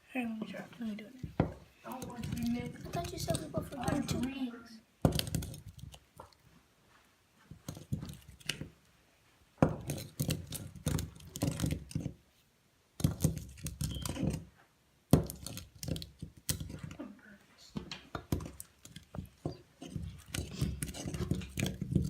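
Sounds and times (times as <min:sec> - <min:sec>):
spoon stirring slime in a bowl: 0:01.2 - 0:04.4, 0:05.0 - 0:06.5, 0:07.4 - 0:08.8, 0:09.6 - 0:12.3, 0:13.0 - 0:22.0.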